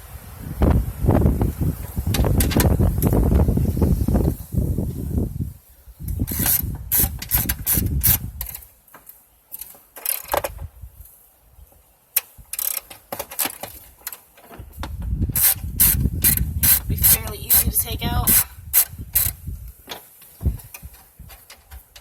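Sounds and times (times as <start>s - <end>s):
ratchet wrench clicking: 6.1s - 8.6s, 9.6s - 10.4s, 12.2s - 14.2s, 15.4s - 19.4s.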